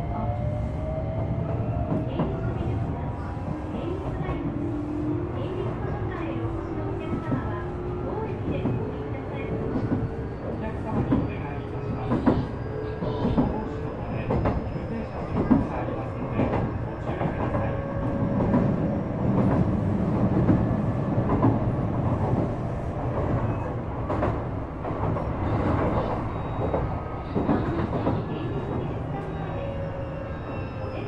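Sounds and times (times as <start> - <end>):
train wheels rumbling on rail: 0.0 - 31.0.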